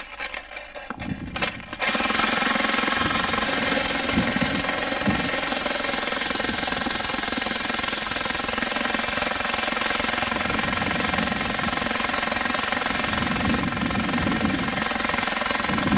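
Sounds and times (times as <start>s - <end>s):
jackhammer breaking rock: 0.0s - 15.9s.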